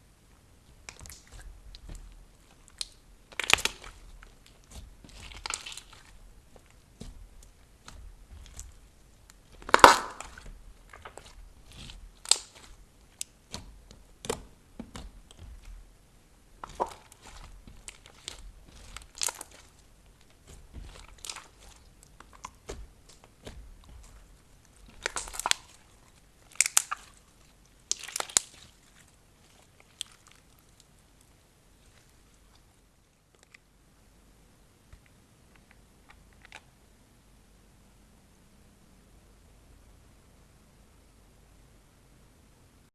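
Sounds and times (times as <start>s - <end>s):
slime kneaded by hand: 0.3s - 32.7s.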